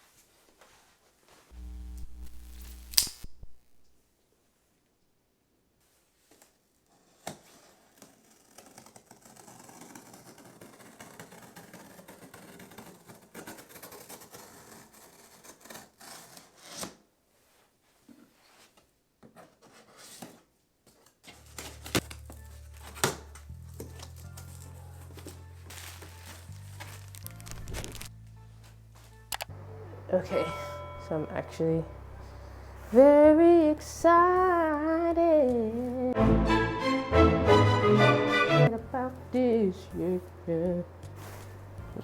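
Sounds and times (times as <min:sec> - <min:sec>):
cardboard packaging rubbing and scraping: 0:06.9 - 0:17.0, 0:21.2 - 0:28.1
background music bass line: 0:36.2 - 0:39.0.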